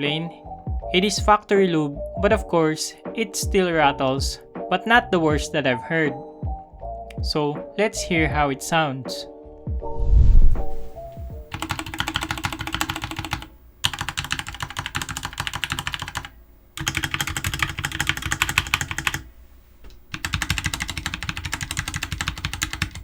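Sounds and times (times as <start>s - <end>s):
keyboard keys tapped rapidly: 11.4s - 19.2s, 20.1s - 23.0s.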